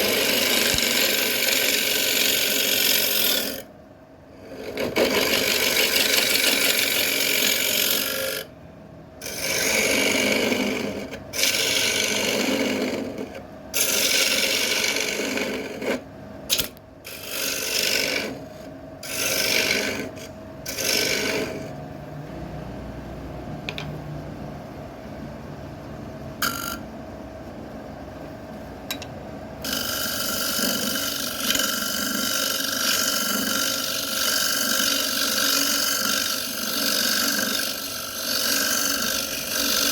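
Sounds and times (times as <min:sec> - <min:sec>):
lathe humming: 0:00.0 - 0:03.6, 0:04.4 - 0:08.5, 0:09.2 - 0:16.0, 0:17.1 - 0:21.8, 0:28.9 - 0:39.9
lathe tool cutting wood: 0:00.0 - 0:03.6, 0:04.5 - 0:08.5, 0:09.2 - 0:16.0, 0:16.6 - 0:21.7, 0:29.6 - 0:39.9.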